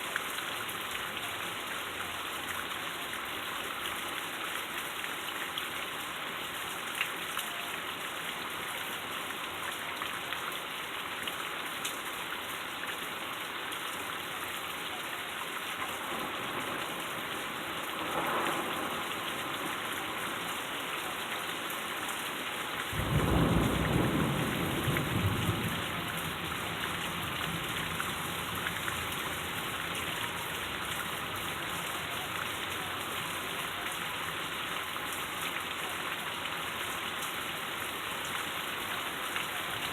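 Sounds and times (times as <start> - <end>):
heavy rain falling: 0.0 - 39.9
thunder rumbling: 22.9 - 31.2
loud thunder clap: 23.0 - 26.2.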